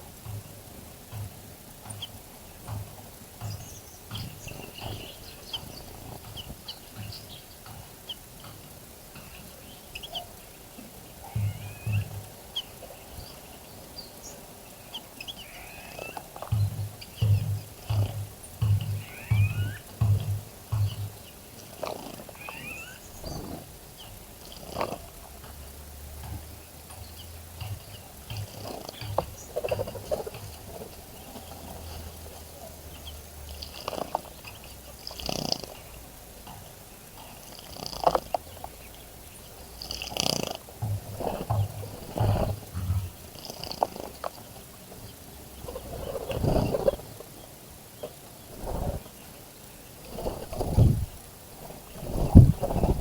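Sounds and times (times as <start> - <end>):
low dull thumps: 0.0 - 9.4, 11.2 - 13.4, 16.4 - 22.6, 23.2 - 32.2, 40.8 - 43.4, 50.2 - 51.3, 52.0 - 53.0
low steady hum: 0.0 - 35.1, 40.7 - 43.4
small birds chirping: 0.0 - 53.0.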